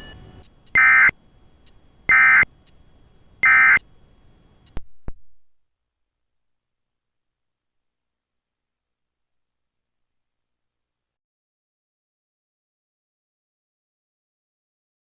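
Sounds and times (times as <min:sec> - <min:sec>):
harsh digital data bursts: 0:00.0 - 0:02.7, 0:03.4 - 0:03.8
clicks: 0:04.6 - 0:05.2.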